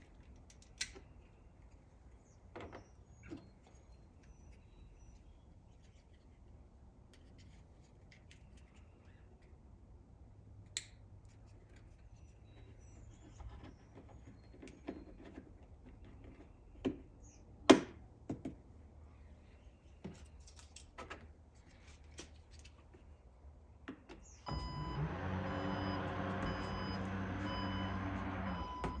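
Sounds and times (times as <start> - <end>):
motor hum: 24.5 - 29.0
regular beeping: 24.5 - 29.0.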